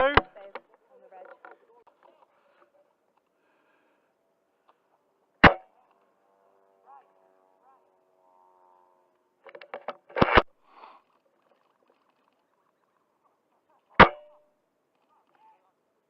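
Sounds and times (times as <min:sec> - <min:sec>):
airsoft rifle sharp cracks: 0:05.4 - 0:05.7, 0:09.5 - 0:10.5.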